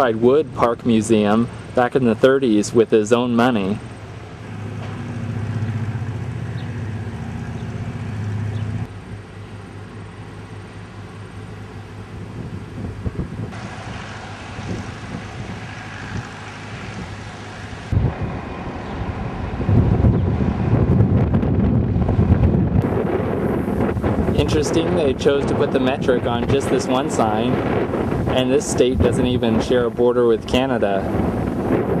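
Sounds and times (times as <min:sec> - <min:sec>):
low engine hum: 0:00.0 - 0:32.0
wind on microphone: 0:12.2 - 0:32.0.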